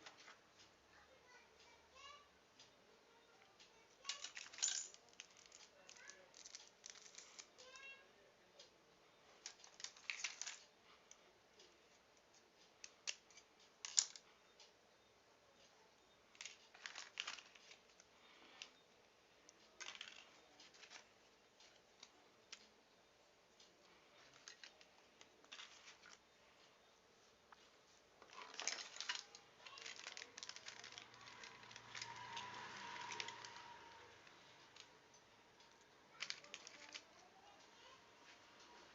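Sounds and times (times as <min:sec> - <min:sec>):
parts and packaging handled: 0:04.0 - 0:07.7, 0:09.3 - 0:10.8, 0:16.3 - 0:18.8, 0:19.5 - 0:22.7, 0:24.1 - 0:26.4, 0:27.5 - 0:35.3, 0:36.1 - 0:37.6.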